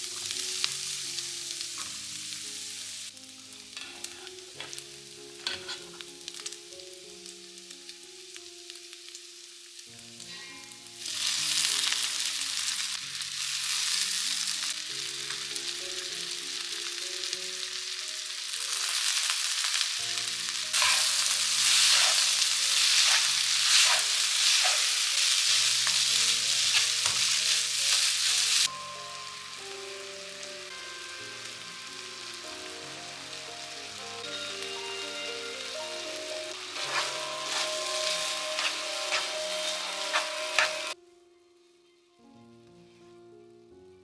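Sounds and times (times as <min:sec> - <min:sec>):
food sizzling in a frying pan: 0:00.0 - 0:41.0
soft background music: 0:00.0 - 0:44.0
stirring in a pan: 0:20.2 - 0:28.7, 0:36.4 - 0:41.0.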